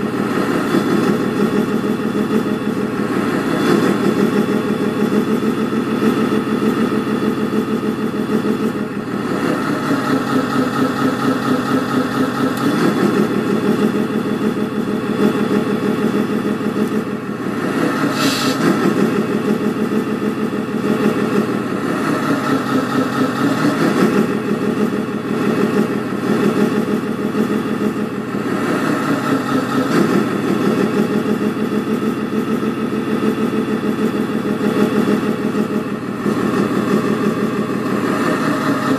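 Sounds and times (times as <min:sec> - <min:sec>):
simulated diesel engine: 0:00.0 - 0:38.9
brief high hiss: 0:18.1 - 0:18.6.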